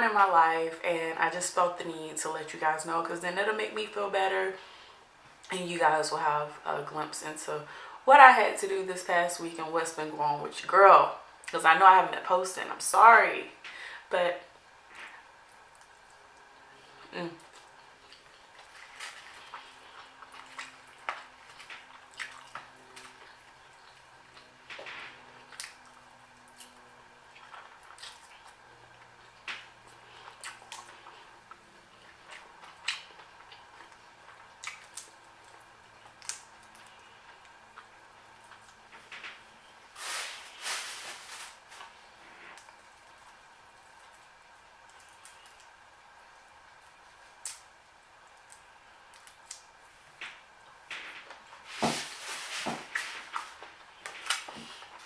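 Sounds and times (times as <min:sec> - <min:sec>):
wet mouth smacking and chewing: 0:17.4 - 0:24.5, 0:27.4 - 0:28.6, 0:30.1 - 0:37.1
food being chewed: 0:17.4 - 0:39.5, 0:41.7 - 0:51.7.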